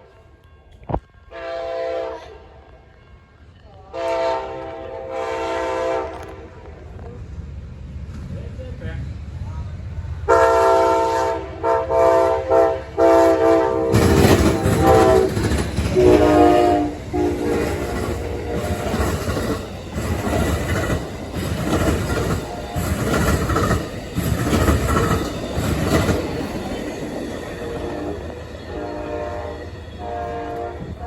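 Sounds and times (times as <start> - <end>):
train horn blasts: 0.0 - 2.6, 3.9 - 6.6, 10.3 - 19.2, 27.6 - 31.0
train cars clickety-clack: 3.4 - 31.0.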